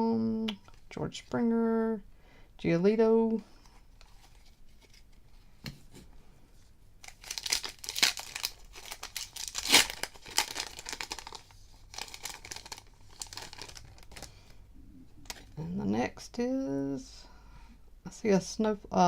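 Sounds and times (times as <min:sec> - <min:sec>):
plastic wrapper tearing and crinkling: 0:07.0 - 0:14.4.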